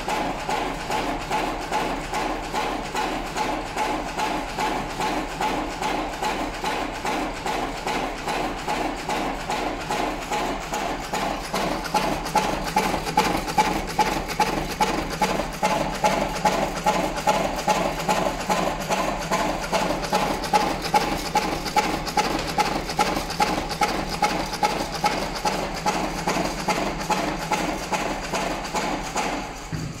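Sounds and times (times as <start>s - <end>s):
machine clacking rhythmically: 0.0s - 30.0s.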